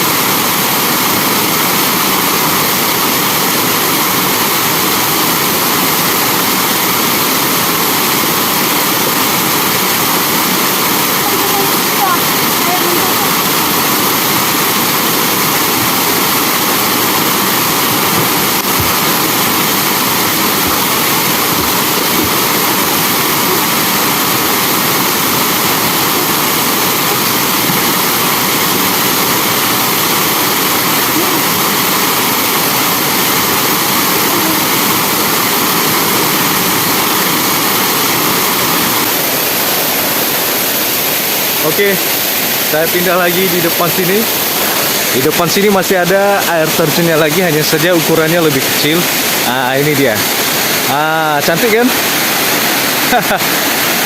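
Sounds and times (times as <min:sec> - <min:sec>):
waterfall pouring into a pool: 0:00.0 - 0:54.0.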